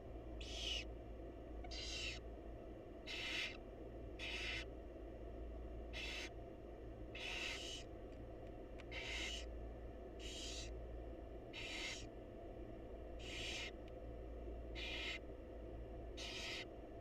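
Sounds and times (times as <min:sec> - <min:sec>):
low steady hum: 0:00.0 - 0:17.0
owl chicks hissing: 0:00.4 - 0:00.9, 0:01.6 - 0:02.2, 0:03.0 - 0:03.6, 0:04.2 - 0:04.7, 0:05.9 - 0:06.4, 0:07.1 - 0:07.9, 0:08.8 - 0:09.5, 0:10.2 - 0:10.8, 0:11.5 - 0:12.1, 0:13.2 - 0:13.8, 0:14.7 - 0:15.3, 0:16.2 - 0:16.7.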